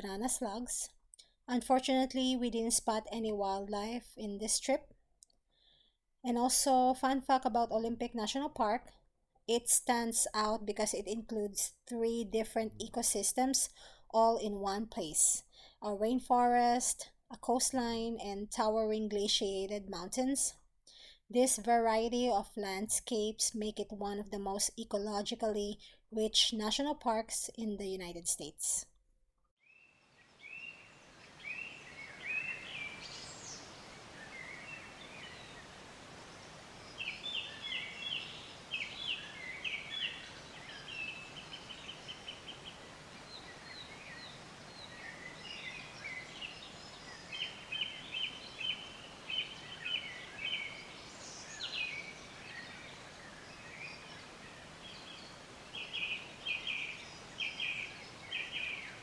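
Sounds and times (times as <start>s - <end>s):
songbirds singing: 29.6s - 59.0s
background hiss: 29.7s - 59.0s.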